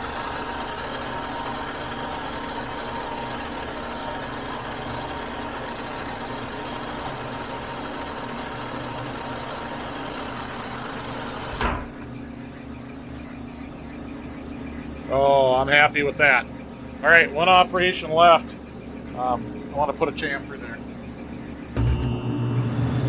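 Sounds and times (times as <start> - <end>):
pad rubbing spinning metal: 0.0 - 14.8
metal lathe running: 0.0 - 23.0.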